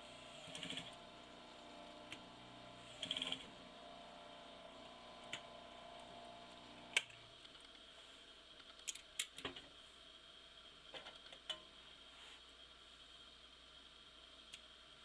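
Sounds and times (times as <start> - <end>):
sewing machine motor humming: 0.0 - 7.0.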